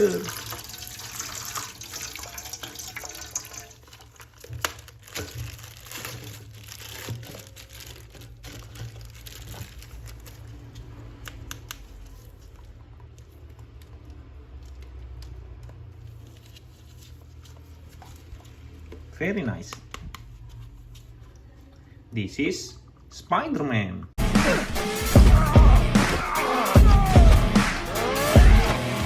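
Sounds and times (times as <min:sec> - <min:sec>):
plastic crinkling and clicks: 0:03.8 - 0:19.0.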